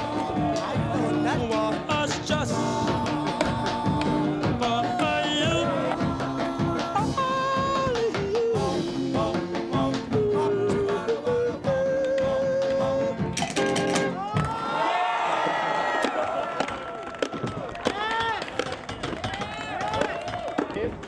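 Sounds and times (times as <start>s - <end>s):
person singing sliding melody: 0.0s - 14.6s
guitar: 0.0s - 14.7s.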